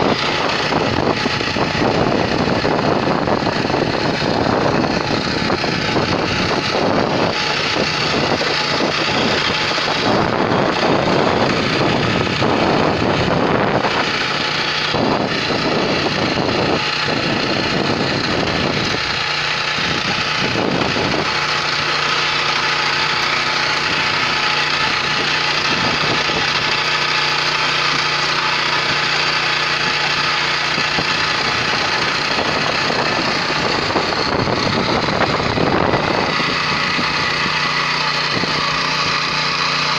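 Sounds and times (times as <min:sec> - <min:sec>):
rotary tines working soil: 0:00.0 - 0:39.9
tiller engine running: 0:00.0 - 0:39.9.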